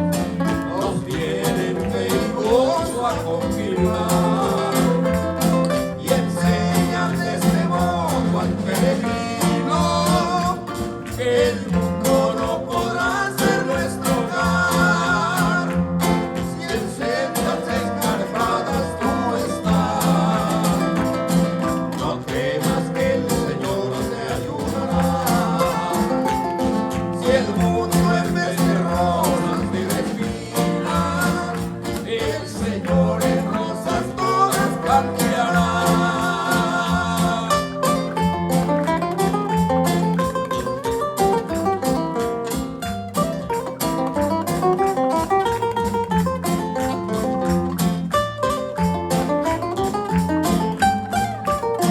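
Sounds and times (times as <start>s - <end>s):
guitar accompaniment: 0.0s - 51.9s
person singing: 0.5s - 38.2s.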